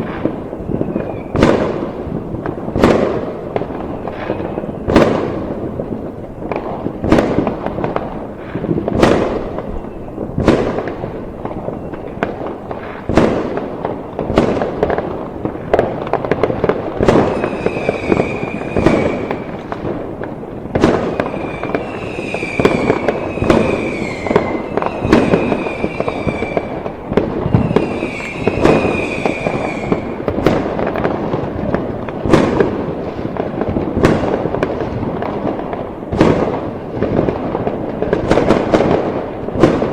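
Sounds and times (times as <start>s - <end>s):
firework whistles: 0.0s - 1.9s, 3.8s - 5.3s, 8.5s - 10.8s, 11.5s - 13.4s, 17.0s - 19.7s, 20.8s - 30.6s
fireworks crackling bangs: 0.0s - 39.9s.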